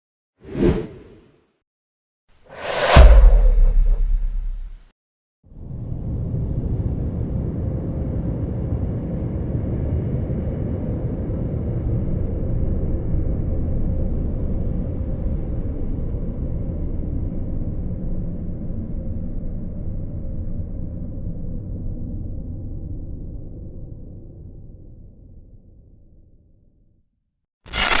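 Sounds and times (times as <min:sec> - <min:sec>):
low rumble: 0:02.6 - 0:04.8.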